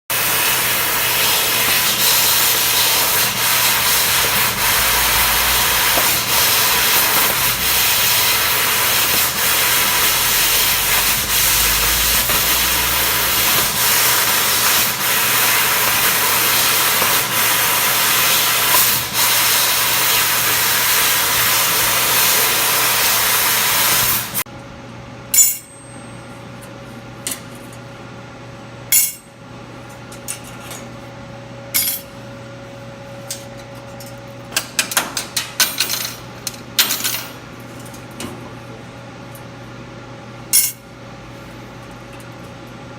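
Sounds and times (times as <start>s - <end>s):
laser engraver rushing noise: 0.2s - 24.4s.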